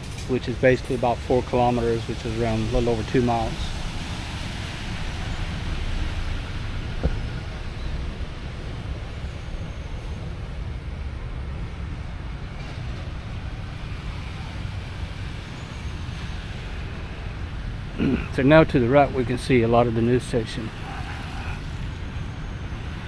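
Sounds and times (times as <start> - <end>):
wind on microphone: 4.8 - 9.9
short knock: 6.8 - 7.9.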